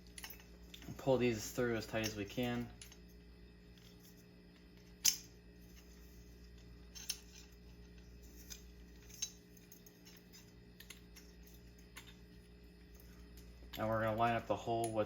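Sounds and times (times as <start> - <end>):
clinks of small metal parts: 0.0 - 3.0, 6.9 - 7.6, 8.3 - 12.3
low steady hum: 0.0 - 15.0.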